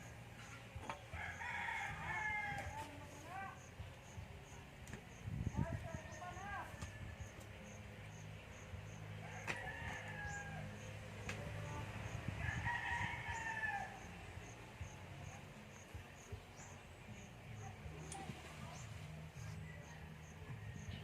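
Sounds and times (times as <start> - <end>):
rooster crowing: 1.2 - 2.8, 9.2 - 10.9, 12.4 - 14.1.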